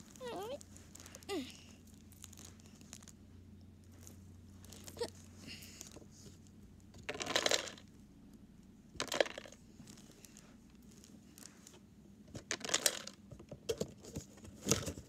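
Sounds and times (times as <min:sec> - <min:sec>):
plastic pieces rattling: 0:07.0 - 0:07.9, 0:09.0 - 0:10.4, 0:12.3 - 0:13.2.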